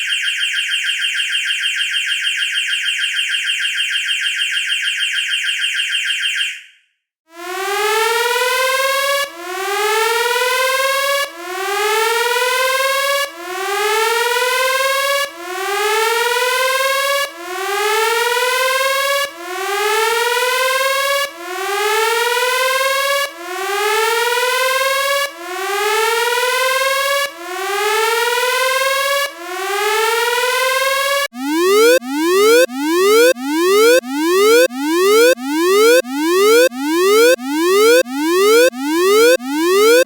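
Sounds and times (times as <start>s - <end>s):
electronic whooping alarm siren: 7.5s - 40.0s.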